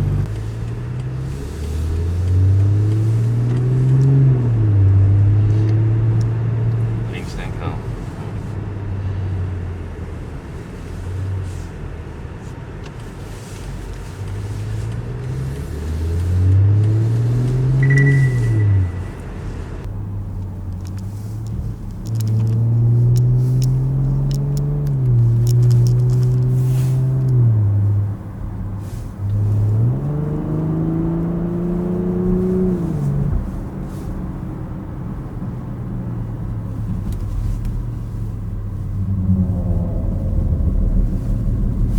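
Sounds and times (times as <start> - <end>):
car engine revving under acceleration: 0.0 - 11.6, 12.2 - 41.9.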